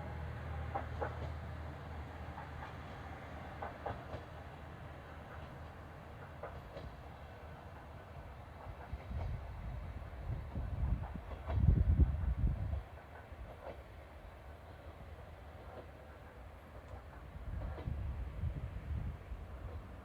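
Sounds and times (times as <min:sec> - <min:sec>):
diesel railcar engine hum: 0:00.0 - 0:20.0.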